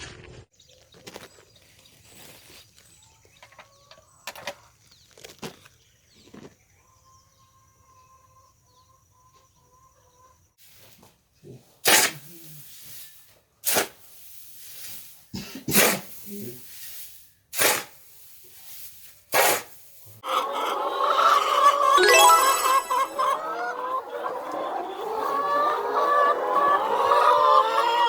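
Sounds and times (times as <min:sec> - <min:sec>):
chickens scratching: 0:00.7 - 0:06.6
chicken calls: 0:02.0 - 0:04.7, 0:06.2 - 0:10.5, 0:20.2 - 0:28.0
chickens squawking: 0:20.2 - 0:22.0, 0:22.9 - 0:28.0.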